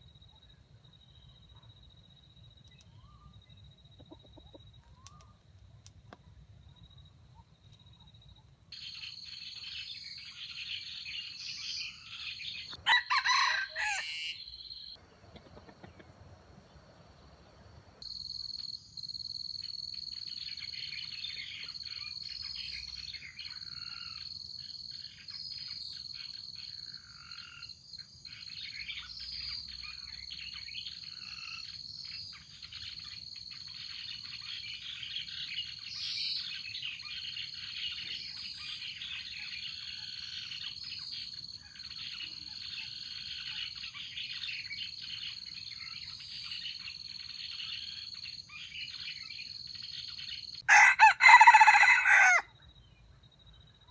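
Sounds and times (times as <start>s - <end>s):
birds chirping and calling: 28.3s - 52.4s.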